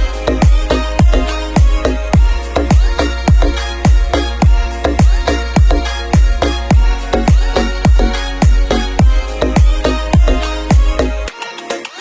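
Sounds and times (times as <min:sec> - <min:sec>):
electronic music: 0:00.0 - 0:12.0.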